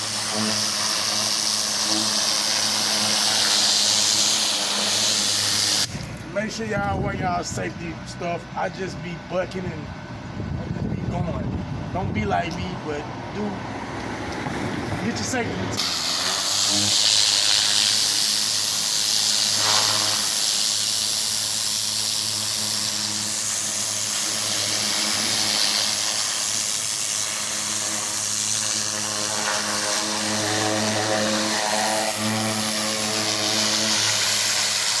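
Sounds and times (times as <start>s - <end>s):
water spray hissing: 0.0s - 6.0s, 15.8s - 35.0s
pressure washer engine hum: 0.0s - 35.0s.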